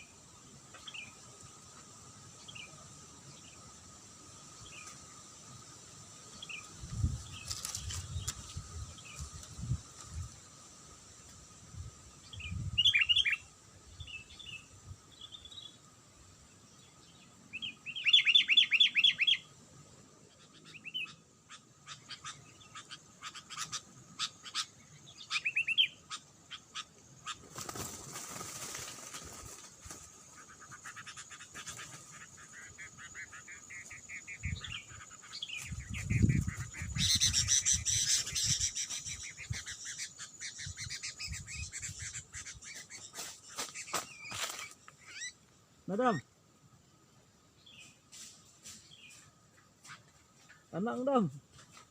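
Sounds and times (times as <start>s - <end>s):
bulbuls chirping: 0.0s - 46.4s
rustling and wing flapping: 6.9s - 10.4s, 27.3s - 30.8s, 42.8s - 44.8s.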